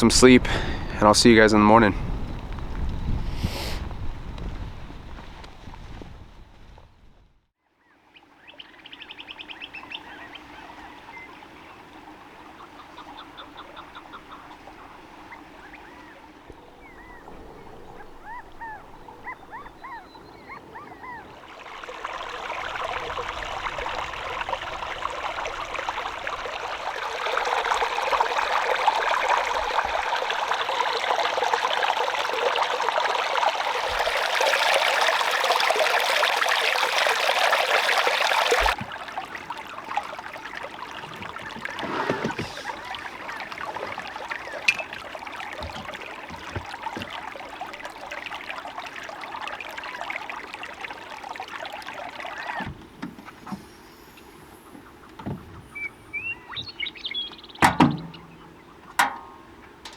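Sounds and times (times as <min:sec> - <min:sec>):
running water rushing: 0:00.0 - 0:06.8, 0:08.2 - 0:59.9
small birds chirping: 0:07.8 - 0:25.0, 0:38.0 - 0:48.9, 0:49.8 - 0:59.0.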